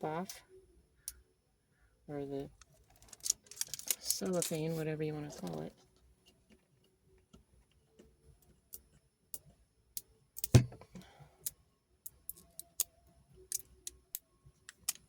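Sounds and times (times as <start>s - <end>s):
soft crinkle: 2.5s - 9.0s.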